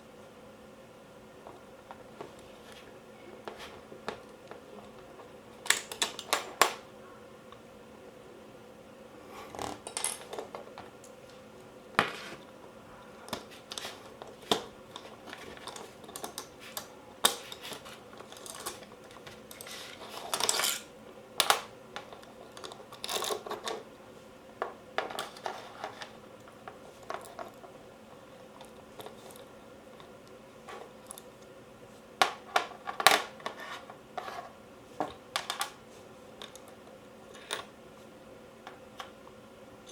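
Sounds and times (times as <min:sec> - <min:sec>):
parts clicking and clinking: 0:03.4 - 0:06.8, 0:13.3 - 0:23.9, 0:35.0 - 0:35.8, 0:36.4 - 0:37.7.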